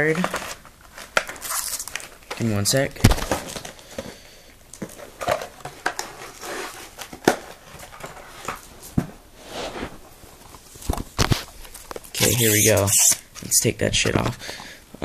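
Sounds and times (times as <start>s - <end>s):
plastic packaging crinkling: 0.1s - 3.9s.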